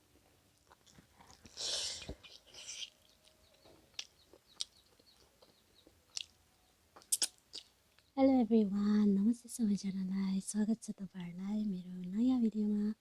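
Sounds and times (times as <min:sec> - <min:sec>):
crunchy bite: 0:07.0 - 0:07.7.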